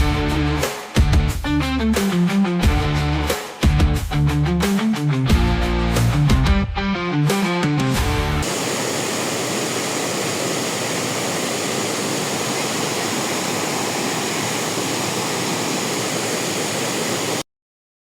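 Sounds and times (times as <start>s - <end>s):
waterfall roaring: 8.4s - 17.4s.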